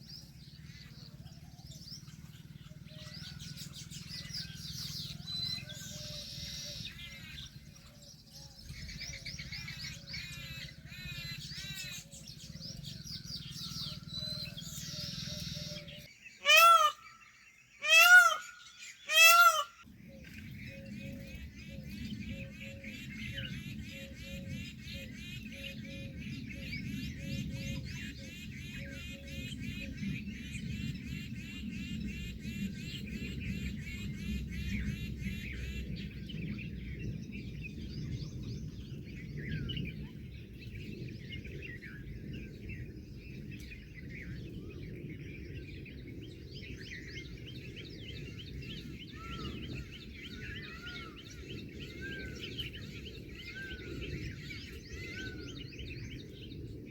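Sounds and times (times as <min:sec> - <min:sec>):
low background rumble: 0:00.0 - 0:17.3
birds chirping and whistling: 0:00.0 - 0:30.6, 0:32.9 - 0:56.8.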